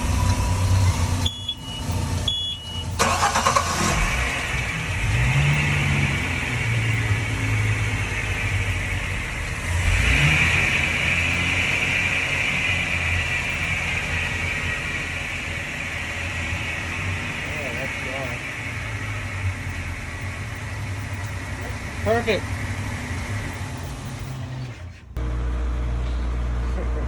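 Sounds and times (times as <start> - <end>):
boat engine starting and revving: 0.0 - 25.3
warning beeps: 0.4 - 3.0, 13.4 - 14.0, 17.0 - 18.5, 19.6 - 22.3.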